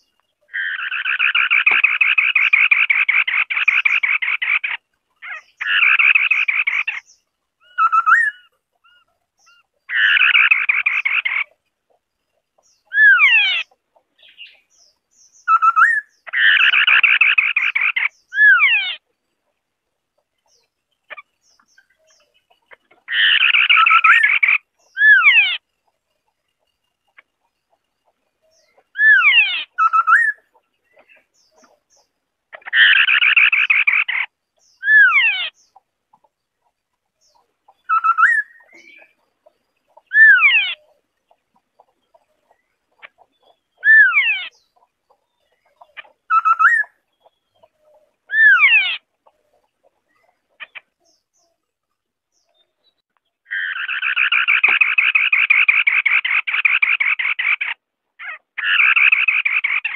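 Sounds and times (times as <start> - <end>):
rapid rasping bird chatter: 0.0 - 59.9
bird whistling phrases: 7.6 - 8.5, 15.4 - 18.8, 29.0 - 30.4, 34.8 - 35.5, 37.9 - 39.1, 46.3 - 47.0, 48.3 - 49.0.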